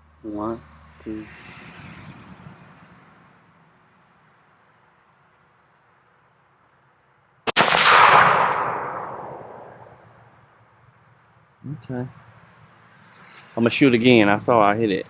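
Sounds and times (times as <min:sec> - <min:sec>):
rifle shot with echo: 0:07.5 - 0:10.3.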